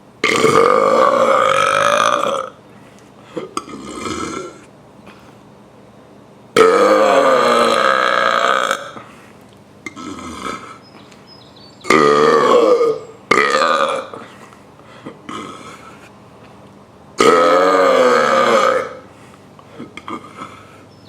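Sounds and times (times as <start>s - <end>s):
man burping loudly: 0.2s - 2.6s, 3.3s - 4.7s, 6.6s - 9.1s, 9.9s - 10.8s, 11.8s - 14.3s, 15.0s - 16.0s, 17.2s - 19.1s, 19.8s - 20.7s.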